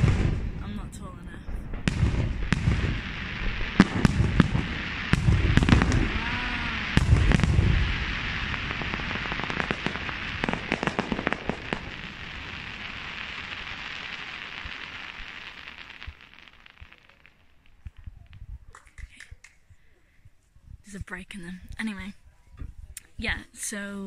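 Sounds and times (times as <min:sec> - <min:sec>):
fireworks booming: 0:00.0 - 0:19.1
fireworks crackling pops: 0:00.0 - 0:19.8.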